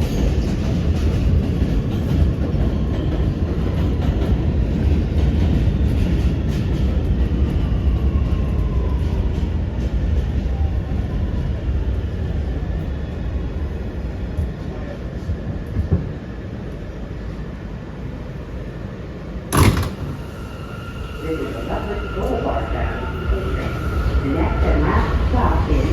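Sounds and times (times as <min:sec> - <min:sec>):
train wheels rumbling on rails: 0:00.0 - 0:25.9
rail clicks: 0:19.5 - 0:20.6.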